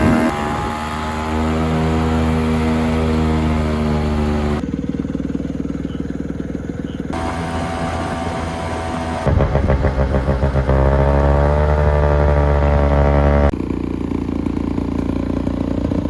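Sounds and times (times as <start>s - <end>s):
two-stroke engine running: 0.0s - 16.0s.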